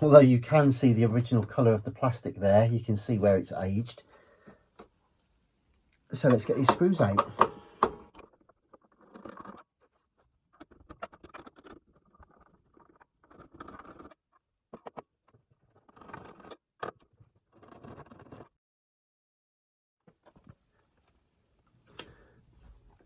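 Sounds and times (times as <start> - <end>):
screwdriver scraping and clicking: 15.8 - 18.5.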